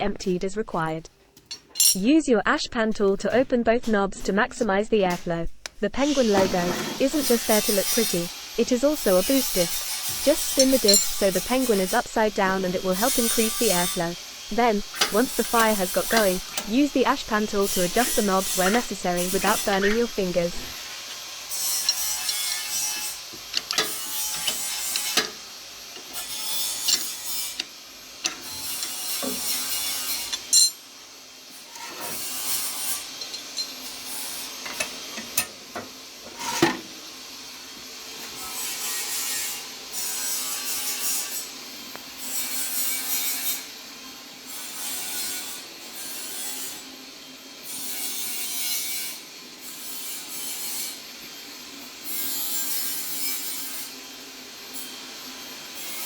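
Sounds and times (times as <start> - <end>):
rasping scraping strokes: 6.0 - 25.4.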